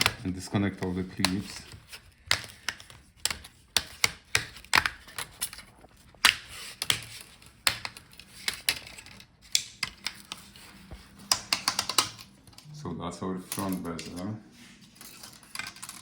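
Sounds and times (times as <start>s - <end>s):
plastic clips snapping: 0.0s - 10.4s, 11.2s - 12.7s.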